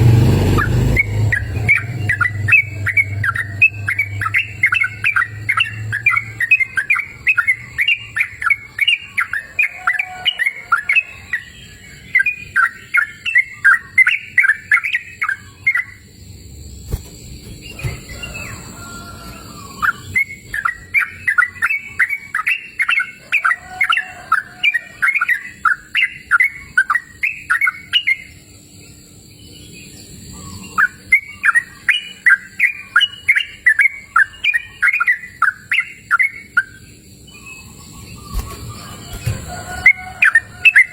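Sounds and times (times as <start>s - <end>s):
bulbul chirping song: 0.0s - 40.9s.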